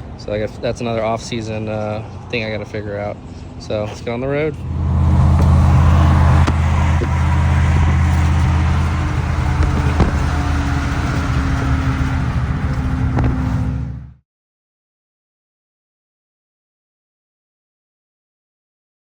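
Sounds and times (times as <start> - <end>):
car engine droning while driving: 3.2 - 14.2.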